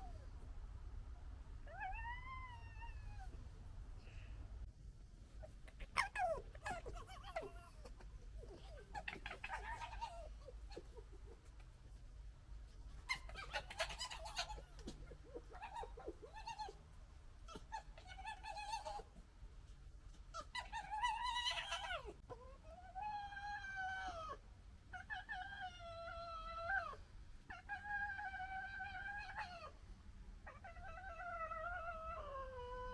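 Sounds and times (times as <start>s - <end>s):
foxes whining: 1.7s - 3.6s, 5.4s - 11.7s, 12.9s - 16.8s, 17.5s - 19.1s, 20.4s - 29.8s, 30.4s - 32.9s
foxes gekkering chatter: 5.4s - 11.7s, 13.0s - 16.8s, 20.4s - 24.4s.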